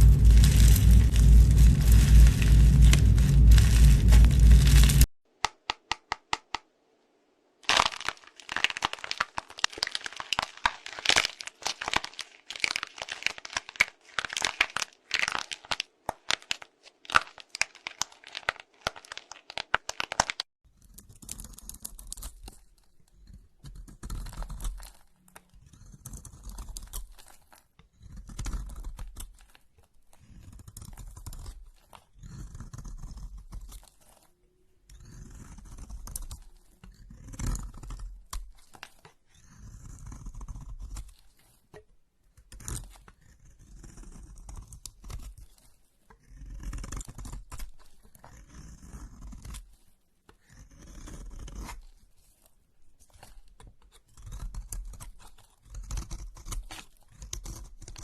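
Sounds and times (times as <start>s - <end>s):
dense crisp crackling: 0.0s - 5.1s.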